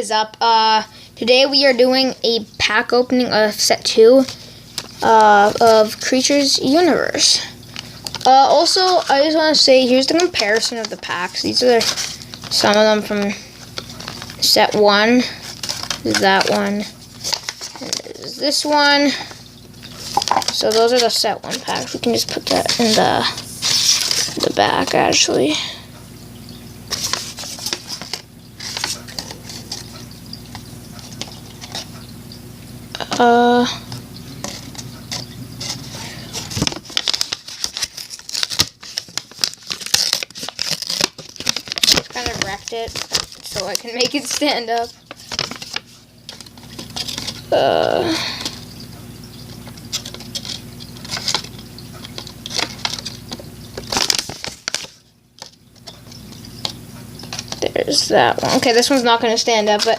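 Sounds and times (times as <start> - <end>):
paper rustling: 7.7 - 25.7, 26.9 - 32.0, 34.4 - 48.6, 49.6 - 59.9.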